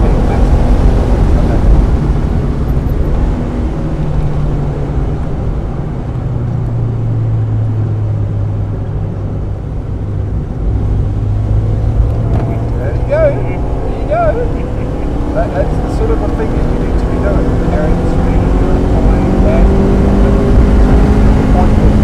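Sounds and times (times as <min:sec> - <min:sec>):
car engine at speed: 0:00.0 - 0:22.0
road noise: 0:00.0 - 0:22.0.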